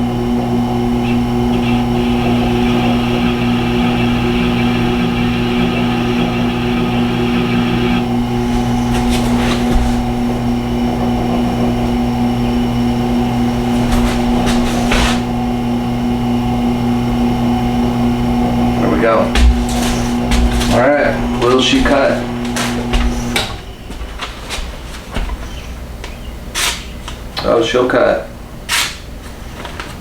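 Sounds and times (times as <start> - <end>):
sharpening machine motor humming: 0.0 - 27.4
steel hissing on grinding wheel: 1.1 - 16.7.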